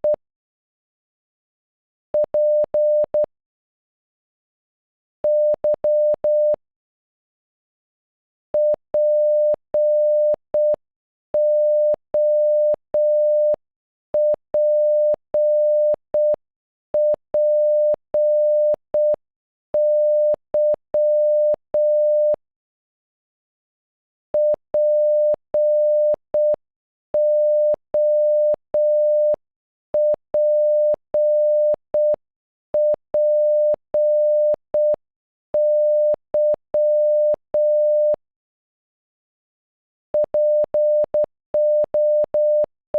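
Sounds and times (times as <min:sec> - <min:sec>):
morse code tone: 0:19.8 - 0:22.4, 0:24.4 - 0:26.6, 0:27.2 - 0:29.4, 0:30.0 - 0:32.2, 0:32.8 - 0:35.0, 0:35.6 - 0:38.2, 0:40.2 - 0:42.7.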